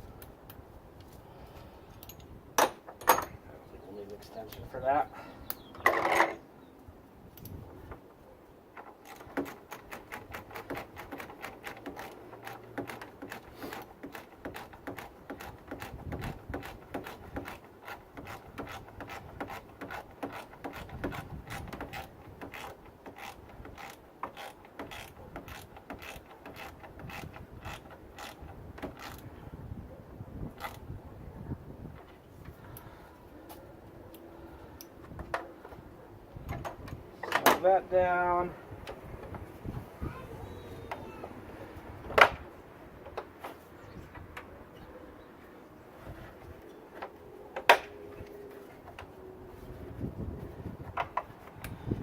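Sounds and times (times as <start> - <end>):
ratchet pawl clicking: 9.0 - 28.4.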